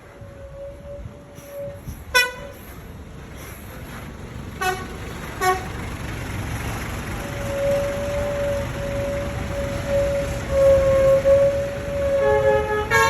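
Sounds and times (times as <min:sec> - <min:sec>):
engine and traffic noise: 0:00.0 - 0:13.0
bus horn toots: 0:00.3 - 0:02.7, 0:04.6 - 0:05.8, 0:07.2 - 0:13.0
long flute-like horn note: 0:07.4 - 0:13.0.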